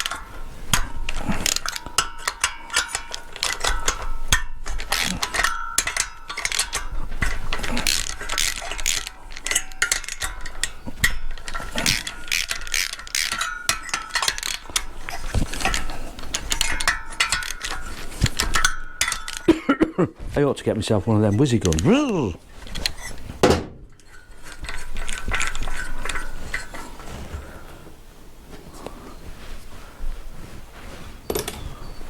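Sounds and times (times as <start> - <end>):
ratchet wrench clicking: 0.0 - 15.8.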